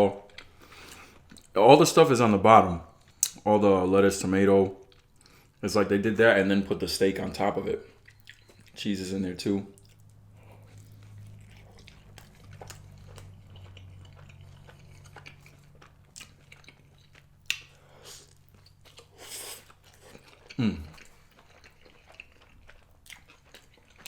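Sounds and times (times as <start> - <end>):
low steady hum: 0.0 - 24.0
wet chewing with mouth clicks: 2.9 - 3.4, 4.7 - 5.6, 7.4 - 8.9, 9.7 - 24.0.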